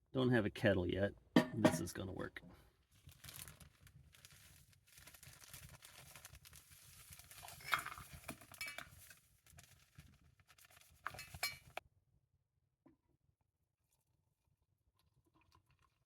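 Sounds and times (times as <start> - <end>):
spoon stirring in cookware: 7.5 - 9.0, 11.0 - 11.8.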